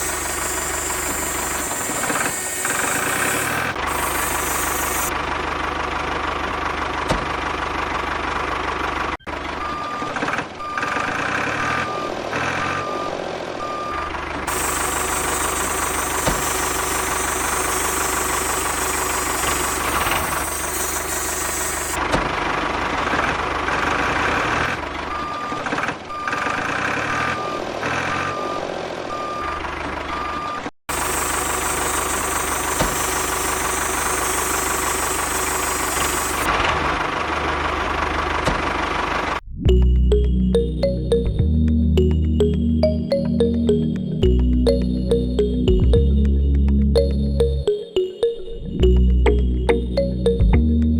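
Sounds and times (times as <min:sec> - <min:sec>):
reversing alarm beeping: 0:00.0 - 0:05.1, 0:09.2 - 0:22.0, 0:25.1 - 0:36.5
heavy vehicle engine running: 0:00.0 - 0:41.2.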